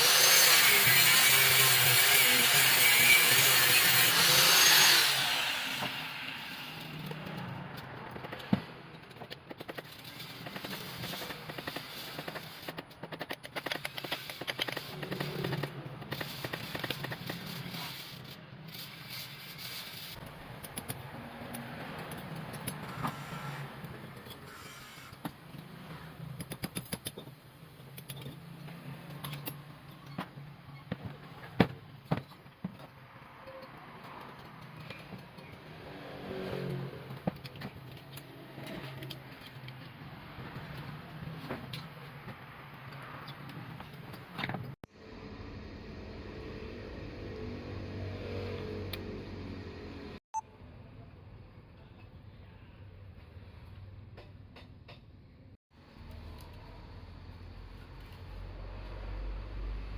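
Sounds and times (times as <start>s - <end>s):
rapid clicks and scraping: 6.6s - 24.5s.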